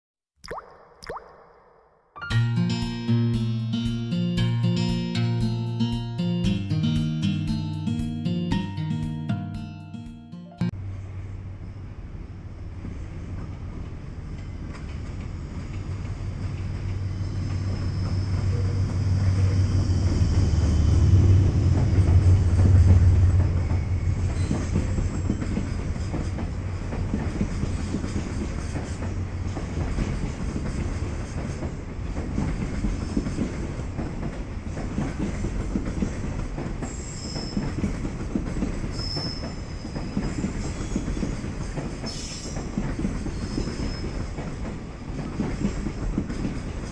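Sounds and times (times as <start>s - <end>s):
train wheel clatter: 12.8s - 46.9s
high wheel squeals: 17.0s - 21.2s, 36.8s - 38.0s, 38.9s - 44.3s.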